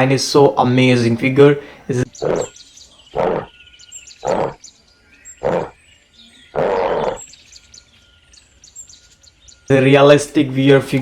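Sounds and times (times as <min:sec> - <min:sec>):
faint bird chirps: 0:01.6 - 0:11.0
animal growling: 0:02.0 - 0:03.6, 0:04.2 - 0:04.6, 0:05.4 - 0:05.8, 0:06.5 - 0:07.3.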